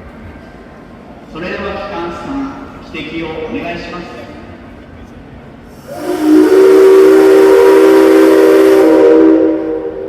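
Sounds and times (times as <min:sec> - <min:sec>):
steam hiss: 0:05.7 - 0:10.0
steam locomotive whistle: 0:05.8 - 0:10.0.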